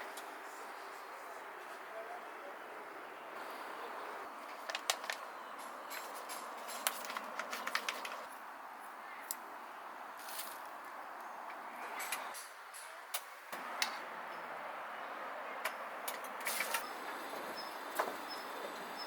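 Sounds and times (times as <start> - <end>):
steady hiss: 16.4 - 19.0.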